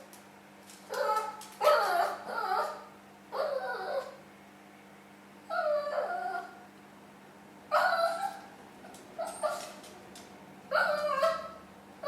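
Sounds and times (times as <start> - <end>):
dog whining: 0.9 - 4.2, 5.4 - 6.6, 7.7 - 8.5, 9.2 - 9.9, 10.7 - 11.6.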